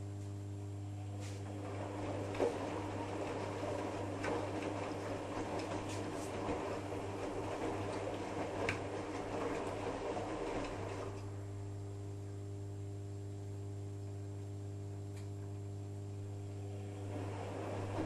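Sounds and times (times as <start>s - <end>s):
washing machine electrical hum: 0.0s - 18.0s
washing machine drum sloshing: 1.0s - 11.6s, 16.3s - 18.0s.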